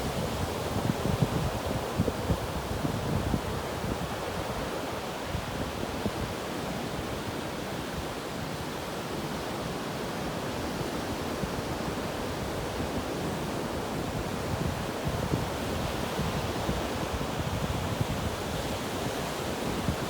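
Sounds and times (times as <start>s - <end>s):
wind rumbling on microphone: 0.0s - 7.4s, 11.5s - 20.0s.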